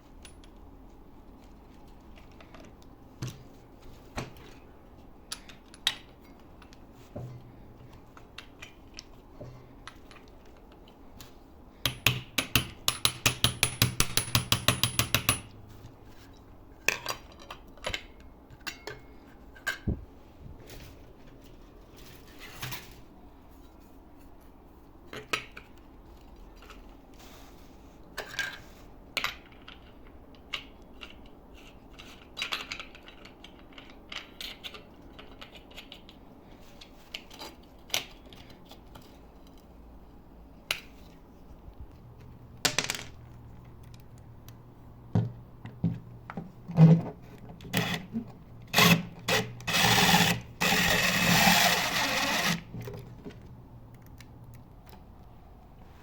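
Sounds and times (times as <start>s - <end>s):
grinding wheel on steel: 48.7s - 52.7s.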